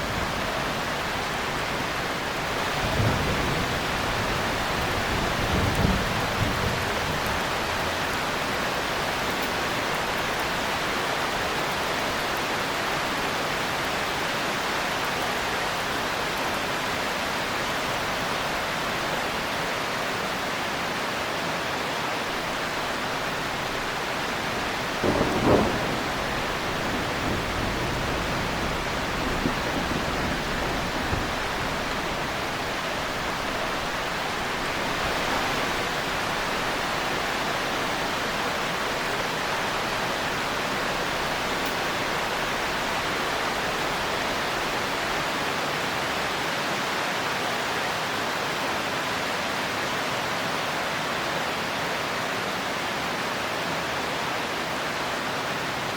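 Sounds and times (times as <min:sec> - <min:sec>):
thunder rumble: 0:00.0 - 0:11.5, 0:22.3 - 0:45.3
heavy rain: 0:00.0 - 0:55.9
thunder crack: 0:23.5 - 0:37.0.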